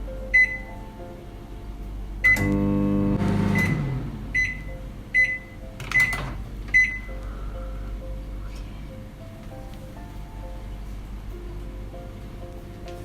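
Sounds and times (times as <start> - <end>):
microwave oven humming: 0.0 - 8.4
microwave oven beeping: 0.3 - 0.8, 2.2 - 7.2.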